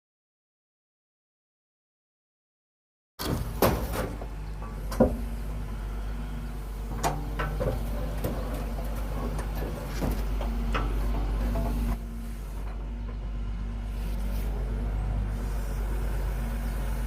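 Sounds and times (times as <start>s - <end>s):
diesel engine running: 3.2s - 17.0s
metallic clanks: 6.9s - 12.0s.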